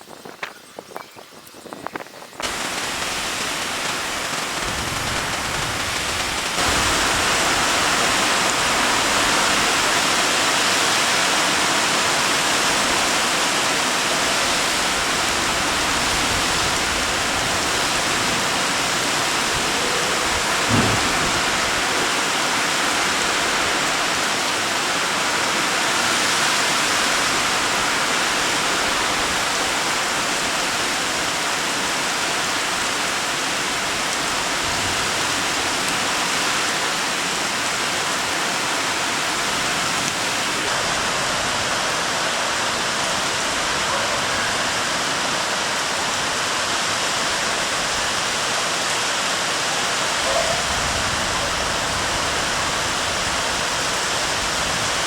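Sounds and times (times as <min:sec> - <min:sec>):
heavy rain pouring: 0:02.4 - 0:55.0
short low thump: 0:20.7 - 0:21.5.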